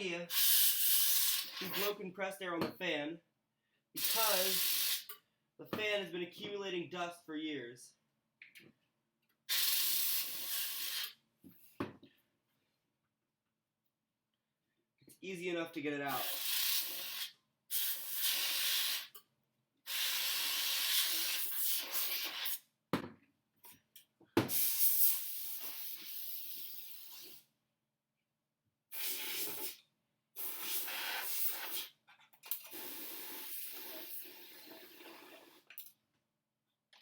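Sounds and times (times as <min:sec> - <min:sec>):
compressed air spray hissing: 0:00.3 - 0:02.0, 0:04.0 - 0:05.1, 0:09.5 - 0:11.2, 0:16.2 - 0:19.1, 0:19.9 - 0:22.6, 0:24.5 - 0:27.4, 0:28.9 - 0:29.8, 0:30.4 - 0:31.9, 0:32.7 - 0:35.6.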